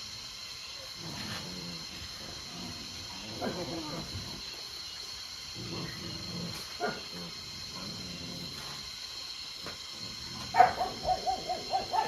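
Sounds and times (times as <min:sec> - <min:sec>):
background hiss: 0:00.0 - 0:12.0
dog barking loudly: 0:10.5 - 0:12.0.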